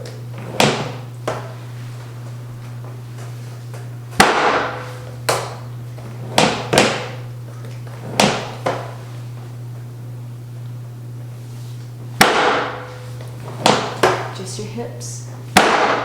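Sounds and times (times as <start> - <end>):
low steady hum: 0.0 - 16.0
sharp ringing knocks: 15.6 - 16.0.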